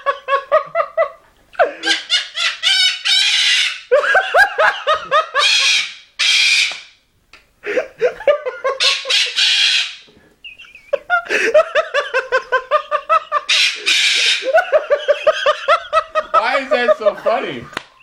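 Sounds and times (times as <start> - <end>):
bird mimicking laughter: 1.8 - 4.4, 5.1 - 6.8, 8.6 - 11.1, 12.7 - 16.5.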